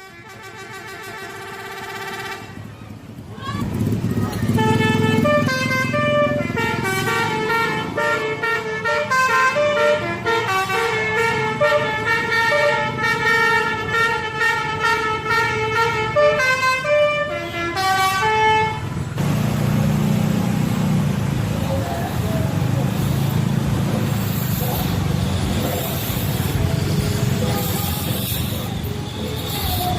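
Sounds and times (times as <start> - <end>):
musical bus air horn melody: 0.0 - 2.7, 4.5 - 19.0, 24.2 - 29.9.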